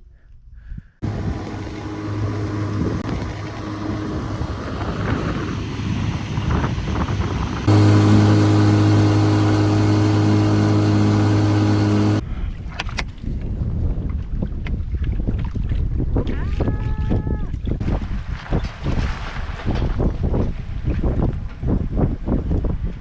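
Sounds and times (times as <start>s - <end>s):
outboard motor running: 1.0s - 12.2s.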